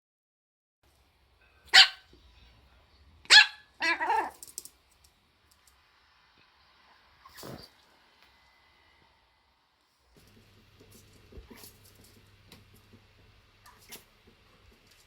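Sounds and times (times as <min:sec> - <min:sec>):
dog barking: 0:01.7 - 0:02.1, 0:03.3 - 0:04.4
dog sneezing: 0:07.2 - 0:07.7.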